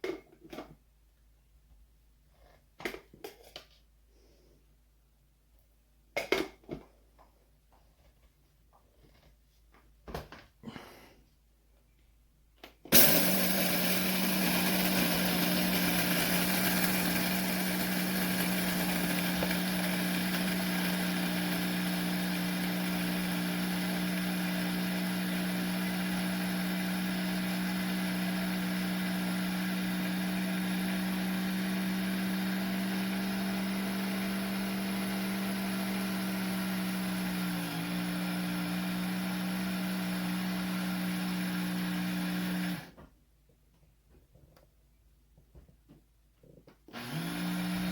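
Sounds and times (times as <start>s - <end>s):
coffee grinder motor running: 12.9s - 42.9s, 46.9s - 47.9s.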